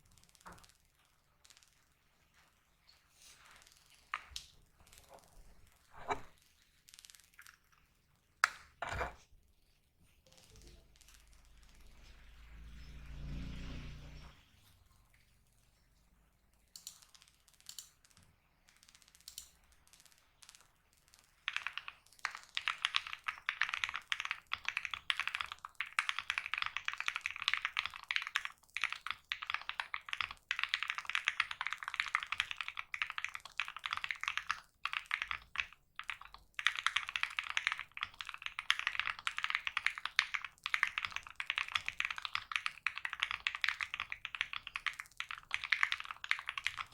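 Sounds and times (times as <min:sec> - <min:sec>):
mechanical keyboard typing: 0:16.7 - 0:46.9.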